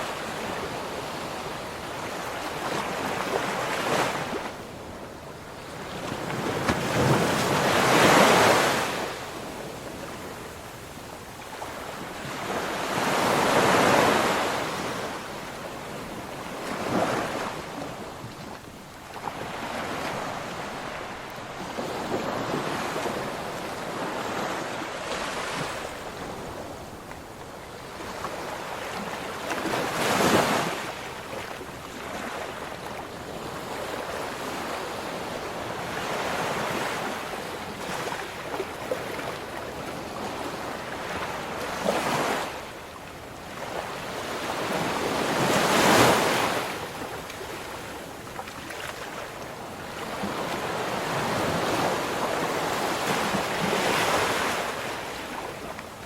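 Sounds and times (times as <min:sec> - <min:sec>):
ocean waves breaking: 0:00.0 - 0:11.0, 0:11.6 - 0:27.2, 0:43.4 - 0:56.0.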